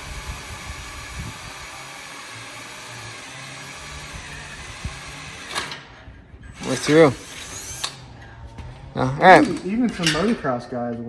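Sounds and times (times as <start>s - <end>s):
power drill boring metal: 0.0s - 8.1s.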